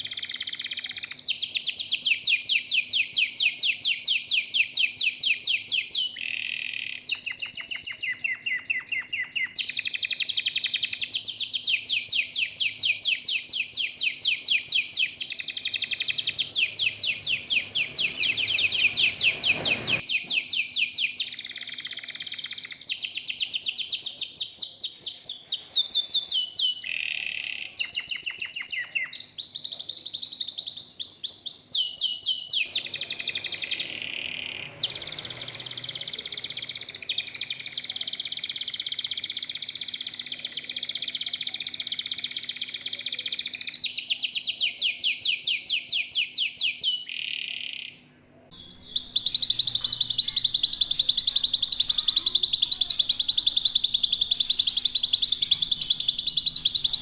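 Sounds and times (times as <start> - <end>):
canaries trilling: 15.5 - 20.3, 32.6 - 37.9, 48.6 - 57.0.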